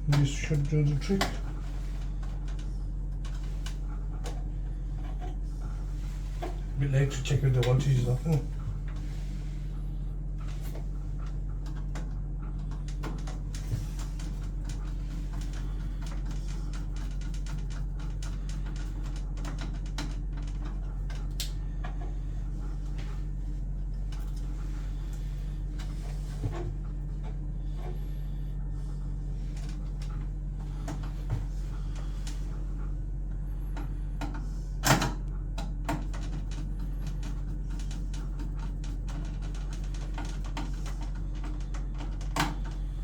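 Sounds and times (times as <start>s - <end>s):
steady low hum: 0.0s - 43.0s
clicks and knocks of wires: 33.8s - 42.8s.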